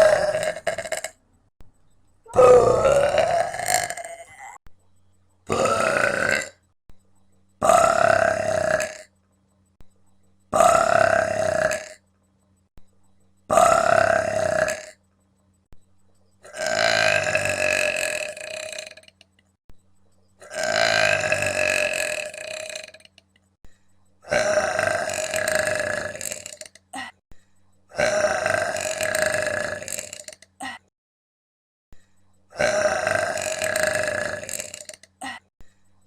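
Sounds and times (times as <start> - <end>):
woman belching: 0.0 - 1.2, 2.3 - 4.6, 5.5 - 6.6, 7.6 - 9.1, 10.6 - 12.0, 13.5 - 15.0, 24.3 - 27.2, 28.0 - 30.8, 32.6 - 35.4.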